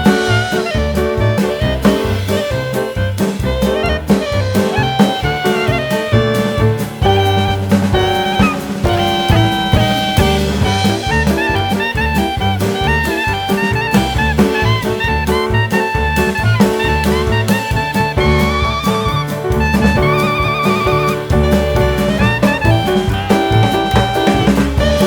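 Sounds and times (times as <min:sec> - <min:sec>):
instrumental jazz music: 0:00.0 - 0:25.0.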